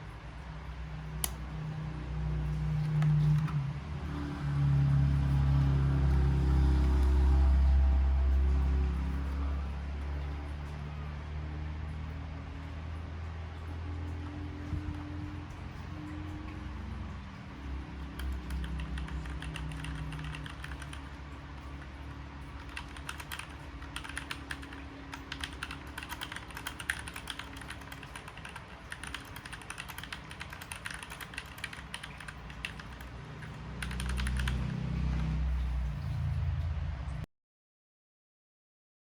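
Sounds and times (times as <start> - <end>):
low steady hum: 0.0 - 37.3
mechanical keyboard key clicks: 18.2 - 21.0, 22.6 - 33.0, 33.8 - 34.7.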